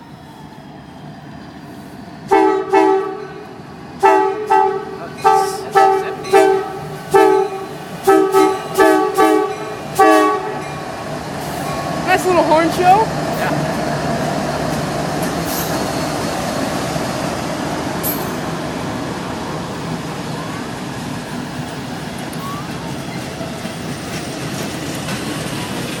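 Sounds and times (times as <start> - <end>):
train wheels rumbling on rail: 0.0 - 26.0
sharp clanks and squeals: 15.2 - 16.5.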